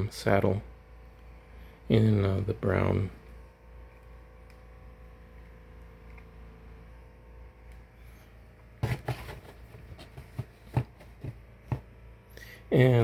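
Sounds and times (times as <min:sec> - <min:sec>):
room hum: 0:00.0 - 0:13.0
hands handling objects: 0:08.8 - 0:11.9.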